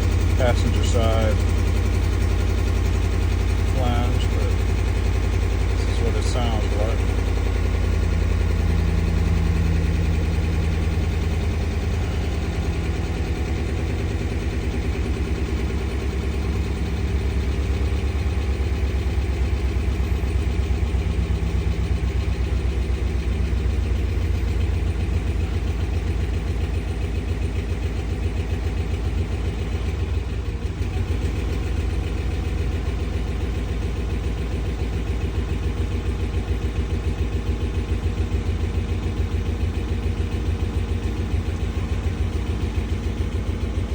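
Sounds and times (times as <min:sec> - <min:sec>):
truck engine idling roughly: 0:00.0 - 0:43.9.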